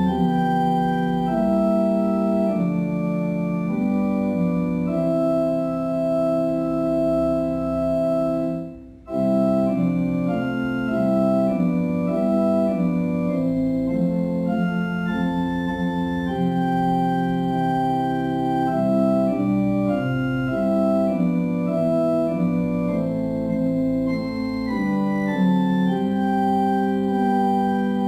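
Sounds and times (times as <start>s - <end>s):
organ playing a slow hymn: 0.0s - 28.0s.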